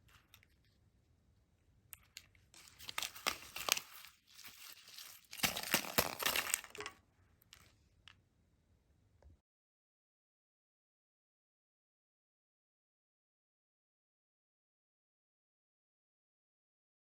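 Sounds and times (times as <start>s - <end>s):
candy wrapper crinkling and tearing: 2.0s - 7.0s.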